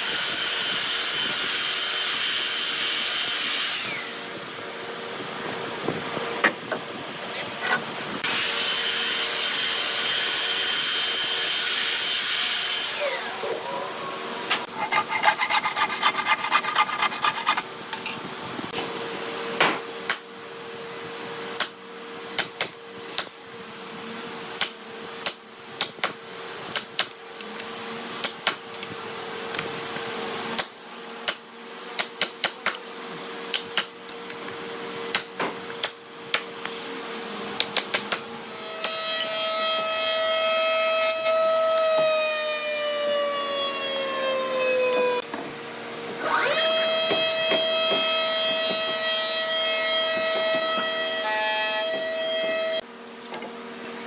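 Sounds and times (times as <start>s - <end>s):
electric power tool: 0.0s - 5.2s, 7.3s - 17.6s, 46.1s - 52.8s
high-pitched motor whine: 46.1s - 48.3s.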